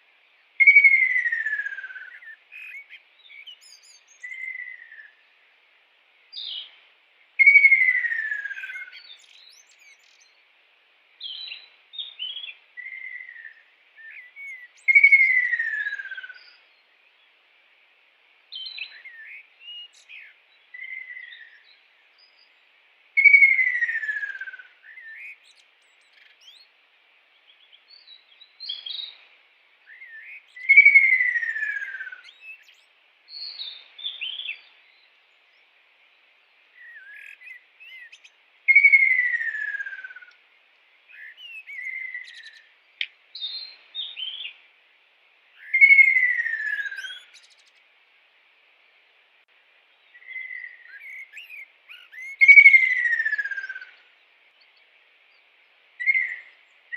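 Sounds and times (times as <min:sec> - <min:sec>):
bird chirps and whistles: 0:00.6 - 0:05.1, 0:23.2 - 0:26.6, 0:29.9 - 0:32.8, 0:36.8 - 0:40.3, 0:41.1 - 0:42.6, 0:45.6 - 0:47.6, 0:50.2 - 0:53.9, 0:56.0 - 0:56.5.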